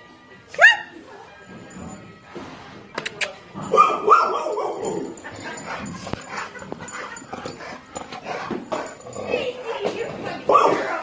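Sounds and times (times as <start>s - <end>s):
dog barking: 3.6s - 7.2s, 10.4s - 11.0s.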